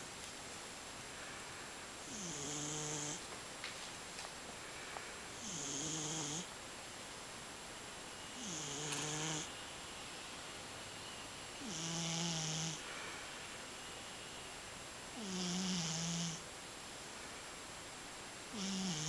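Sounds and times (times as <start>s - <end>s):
cat snoring: 2.0s - 3.2s, 5.4s - 6.5s, 8.4s - 9.5s, 11.6s - 12.9s, 15.2s - 16.4s, 18.5s - 19.0s.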